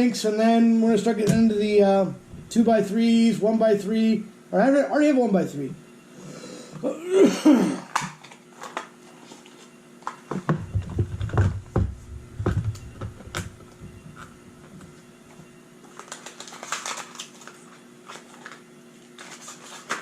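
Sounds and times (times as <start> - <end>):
items clicking and knocking: 10.0 - 14.9.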